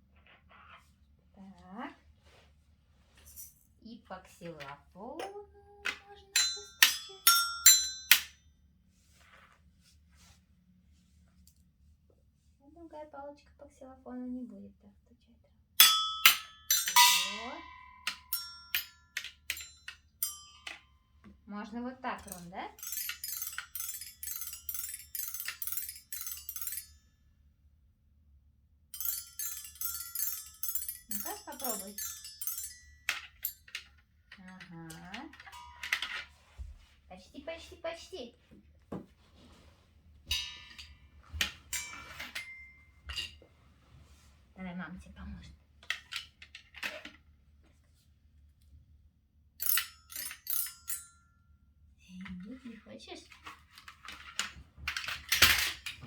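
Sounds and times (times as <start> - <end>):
toy xylophone strikes: 6.3 - 8.3, 15.8 - 20.8, 22.2 - 26.9, 29.0 - 33.6.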